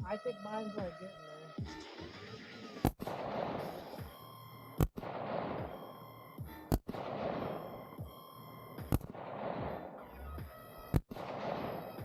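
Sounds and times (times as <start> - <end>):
rifle shots with rolling echo: 2.9 - 4.2, 4.8 - 12.0.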